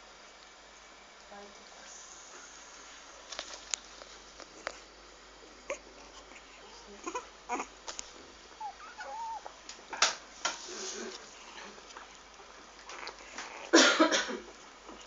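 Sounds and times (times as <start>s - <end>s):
puppy whimpering: 5.6s - 7.8s, 8.6s - 9.6s.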